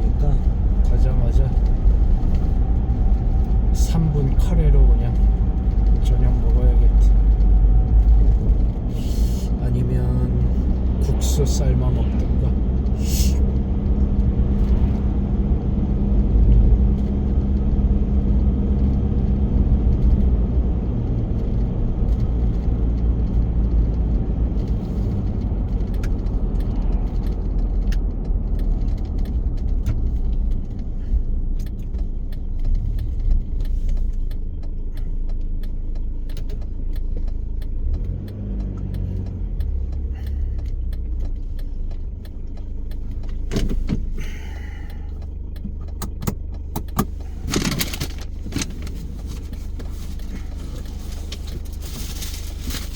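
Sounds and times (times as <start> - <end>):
engine and road rumble: 0.0 - 52.9
light rattling clicks: 0.1 - 52.9.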